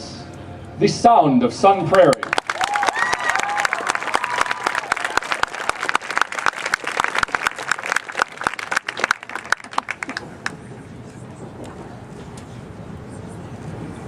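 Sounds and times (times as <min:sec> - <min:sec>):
crowd applauding: 0:02.1 - 0:10.6.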